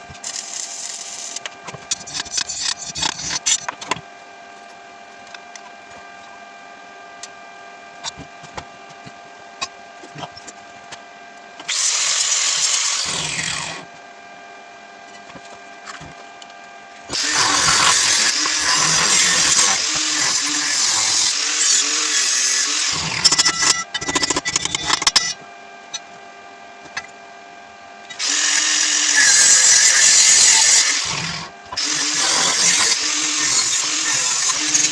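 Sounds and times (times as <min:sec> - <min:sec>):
power tool working metal: 0:11.6 - 0:13.9, 0:17.0 - 0:25.4, 0:28.1 - 0:34.9.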